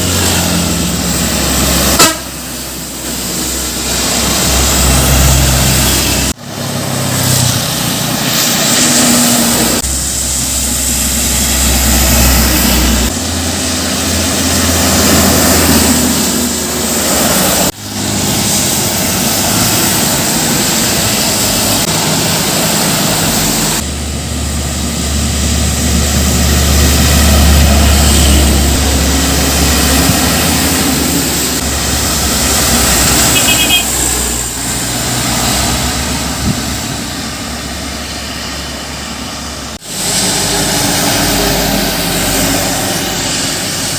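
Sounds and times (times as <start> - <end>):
trucks and buses passing: 0.0 - 43.9.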